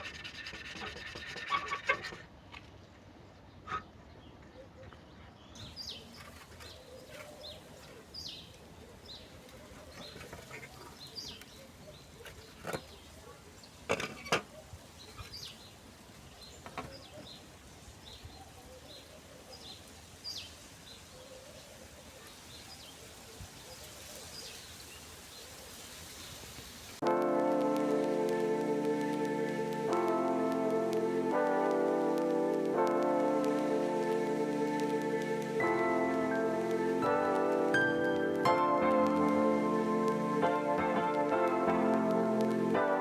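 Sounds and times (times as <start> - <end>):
small birds chirping: 3.0 - 13.8
faint background hiss: 5.1 - 43.0
music: 27.0 - 43.0.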